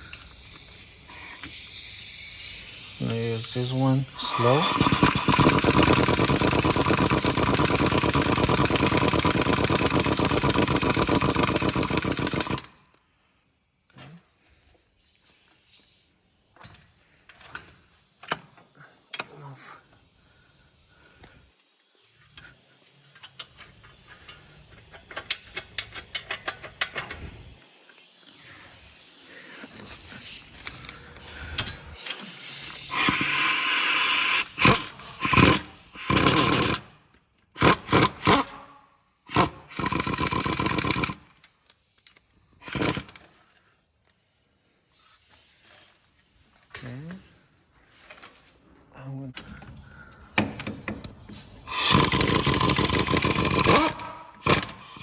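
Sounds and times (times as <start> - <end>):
impact wrench: 0.0 - 12.8, 29.9 - 37.0, 37.6 - 38.7, 39.3 - 41.5, 42.1 - 43.4, 50.4 - 55.0.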